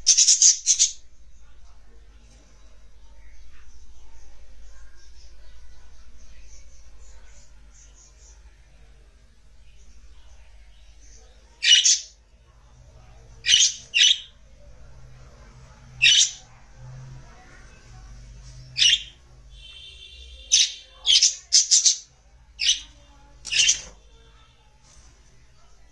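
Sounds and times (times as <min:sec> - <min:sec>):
budgerigar chirps and squawks: 0:00.0 - 0:01.0, 0:11.6 - 0:12.1, 0:13.4 - 0:14.3, 0:16.0 - 0:16.4, 0:18.8 - 0:19.1, 0:20.5 - 0:22.8, 0:23.5 - 0:23.9
budgerigar warble: 0:13.5 - 0:14.3, 0:16.0 - 0:16.4, 0:18.8 - 0:19.1.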